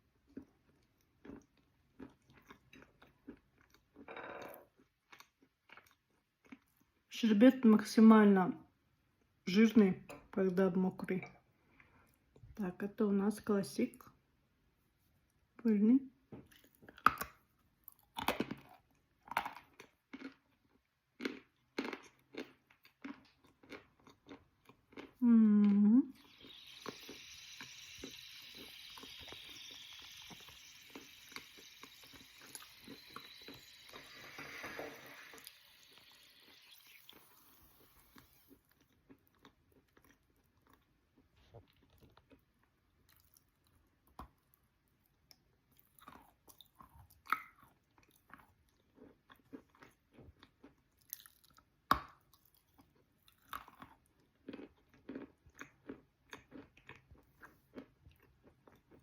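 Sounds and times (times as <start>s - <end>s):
chewing crunches: 0.2s - 7.0s, 16.4s - 44.6s, 45.3s - 59.0s.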